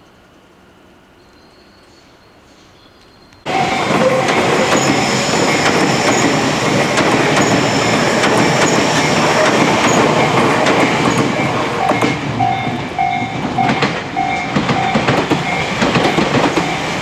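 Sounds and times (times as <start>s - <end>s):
train wheels clattering over rail joints: 3.5s - 17.0s.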